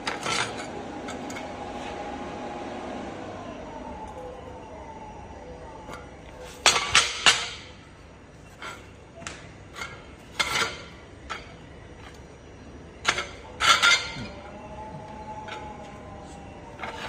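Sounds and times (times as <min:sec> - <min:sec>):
steel plate clanking: 0:06.4 - 0:07.8, 0:09.7 - 0:12.2, 0:13.0 - 0:14.5.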